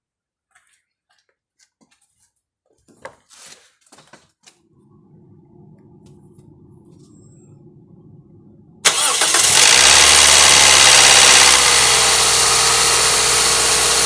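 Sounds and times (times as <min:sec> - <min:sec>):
engine starting and clattering: 0:08.8 - 0:14.0.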